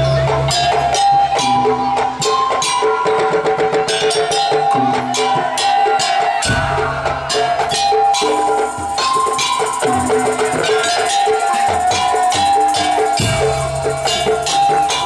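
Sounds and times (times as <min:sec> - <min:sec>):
percussion ensemble playing: 0:00.0 - 0:15.0.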